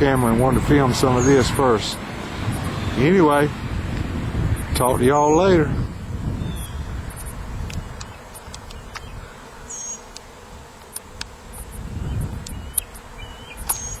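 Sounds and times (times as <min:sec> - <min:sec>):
bees buzzing: 0:00.0 - 0:14.0
bird chirps: 0:06.4 - 0:07.3, 0:08.0 - 0:10.1, 0:12.0 - 0:14.0.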